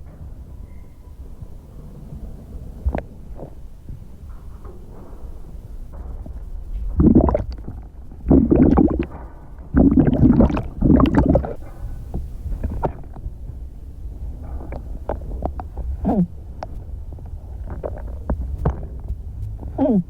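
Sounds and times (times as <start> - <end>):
steady low rumble: 0.0 - 20.0
underwater bubbling and gurgling: 6.8 - 20.0.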